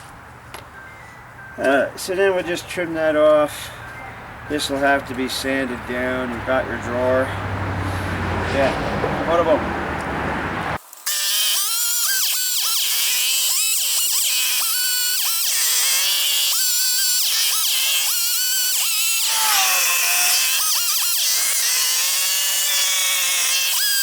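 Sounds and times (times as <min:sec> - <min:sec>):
chainsaw cutting wood: 0:10.8 - 0:24.0.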